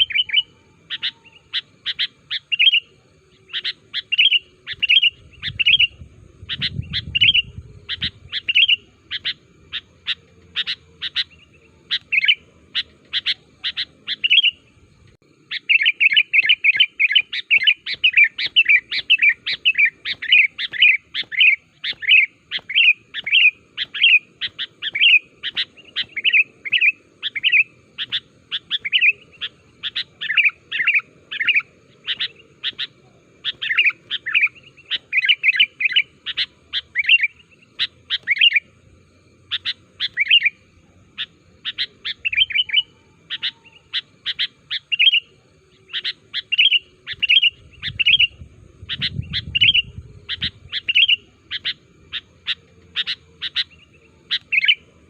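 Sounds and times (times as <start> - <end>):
bird chirping rapidly: 0.0 - 14.8, 15.4 - 38.8, 39.4 - 40.6, 41.2 - 54.9.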